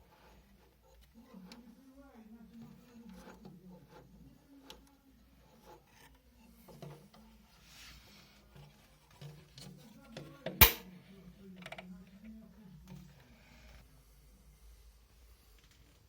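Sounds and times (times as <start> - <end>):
sharp loud knock: 10.6 - 10.8.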